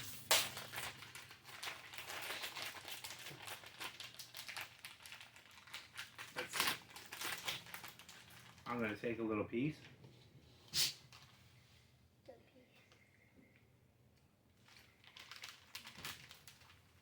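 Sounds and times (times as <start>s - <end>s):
plastic wrapper crinkling: 0.0s - 8.9s, 14.6s - 17.0s.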